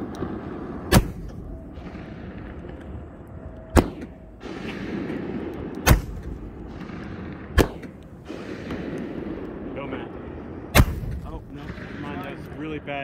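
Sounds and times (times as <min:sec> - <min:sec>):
fireworks banging: 0:00.0 - 0:13.0.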